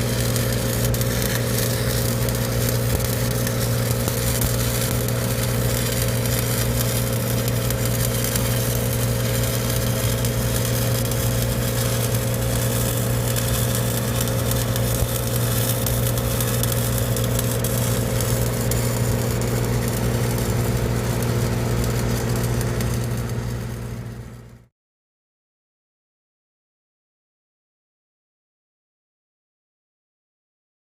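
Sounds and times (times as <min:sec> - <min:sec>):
welding machine engine drone: 0:00.0 - 0:24.7.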